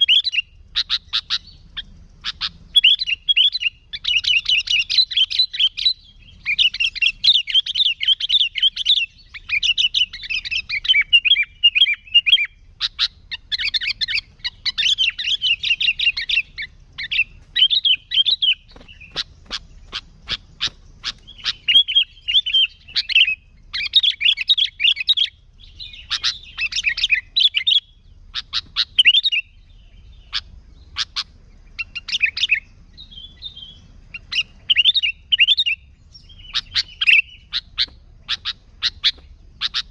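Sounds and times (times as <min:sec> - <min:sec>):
bulbul singing chattering phrases: 0:00.0 - 0:39.9
sharp clicking bird notes: 0:12.8 - 0:29.4, 0:34.1 - 0:39.9.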